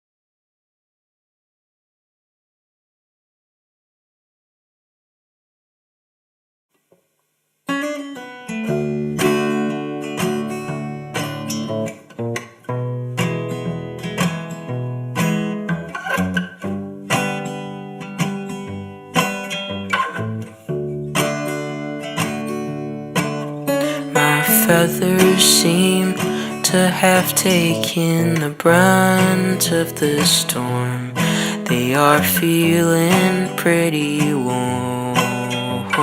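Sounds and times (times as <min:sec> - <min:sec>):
fingerpicked acoustic guitar: 0:07.6 - 0:36.0.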